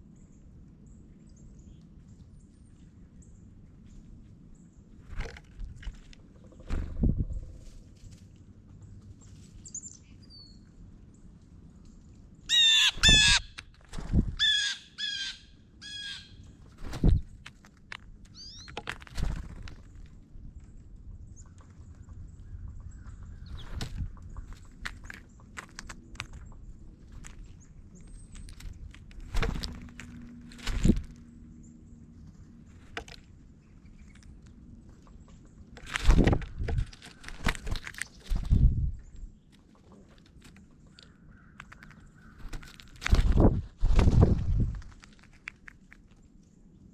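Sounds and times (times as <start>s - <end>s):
birds clicking and scuffing: 5.0s - 9.7s, 16.6s - 20.8s, 23.5s - 31.3s, 32.2s - 46.4s
faint high bird chirps: 9.6s - 10.8s, 18.3s - 18.8s
harsh bird calls: 12.5s - 13.6s, 14.4s - 16.6s.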